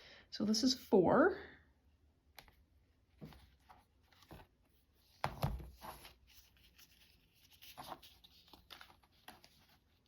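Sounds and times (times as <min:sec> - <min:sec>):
paper and tools tapping and rubbing: 0:05.2 - 0:10.0.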